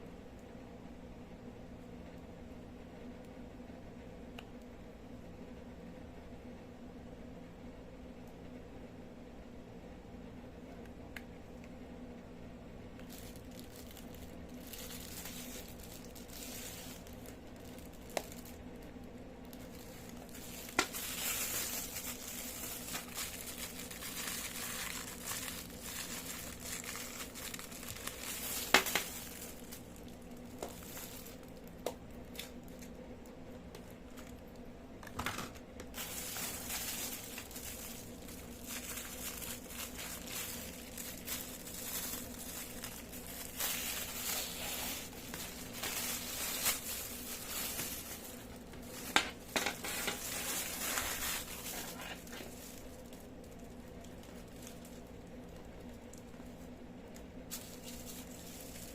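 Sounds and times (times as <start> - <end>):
packaging crinkling and tearing: 13.0 - 33.0, 35.6 - 56.5, 57.5 - 58.9.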